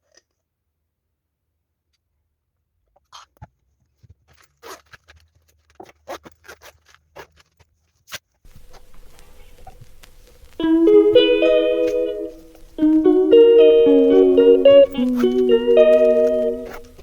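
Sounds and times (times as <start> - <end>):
small objects rustling and clicking: 3.0 - 17.0
soft room tone hiss: 8.0 - 17.0.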